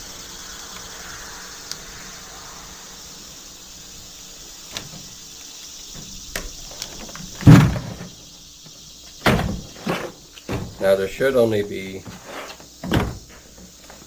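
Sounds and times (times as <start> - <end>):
loud thump: 7.2 - 8.3, 9.2 - 10.9, 12.8 - 13.3.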